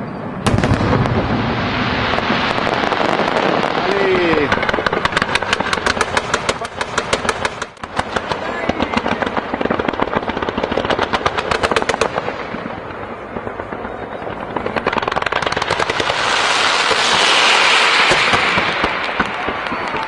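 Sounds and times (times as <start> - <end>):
fireworks bangs: 0.2 - 20.0
fireworks crackling hiss: 0.8 - 10.5, 14.8 - 20.0.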